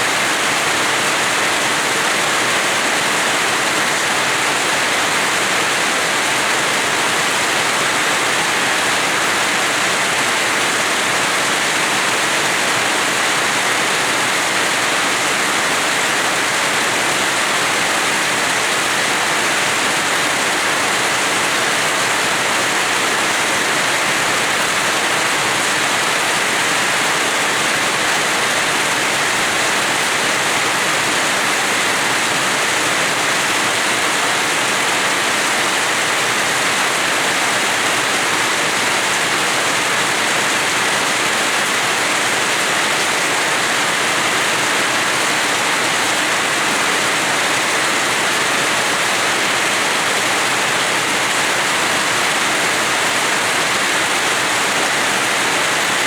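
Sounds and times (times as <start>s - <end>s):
heavy rain falling: 0.0s - 56.0s.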